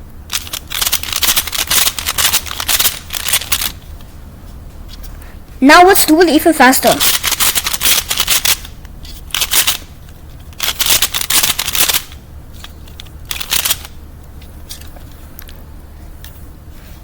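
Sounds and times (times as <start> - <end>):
puzzle layers clicking: 13.3 - 13.9.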